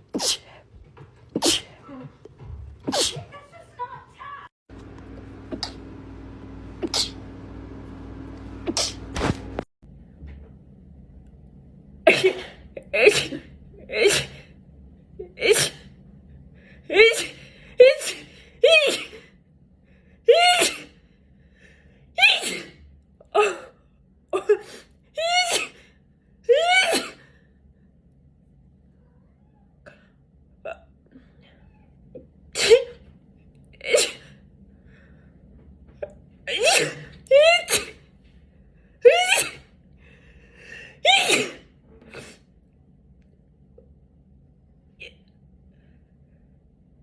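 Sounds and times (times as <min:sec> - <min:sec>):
person sneezing: 0:00.1 - 0:00.6, 0:01.3 - 0:02.0, 0:02.8 - 0:03.3, 0:05.5 - 0:05.8, 0:06.8 - 0:07.2, 0:08.6 - 0:09.4, 0:36.5 - 0:38.0, 0:39.1 - 0:39.7, 0:41.0 - 0:42.4.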